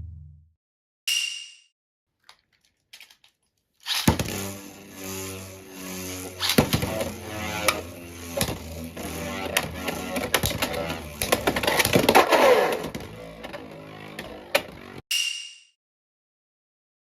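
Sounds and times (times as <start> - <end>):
spinning top whirring: 3.8 - 15.0.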